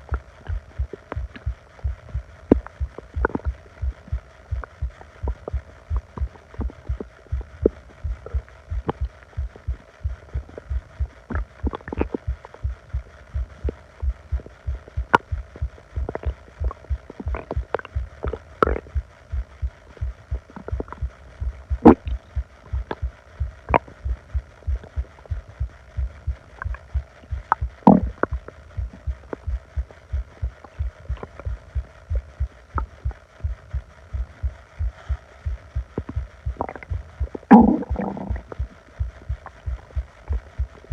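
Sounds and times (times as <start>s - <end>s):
low rhythmic thudding: 0.0s - 40.9s
stomach gurgling and squeaking: 10.3s - 12.7s, 14.4s - 19.1s, 20.4s - 24.1s, 26.5s - 29.5s, 35.8s - 40.9s.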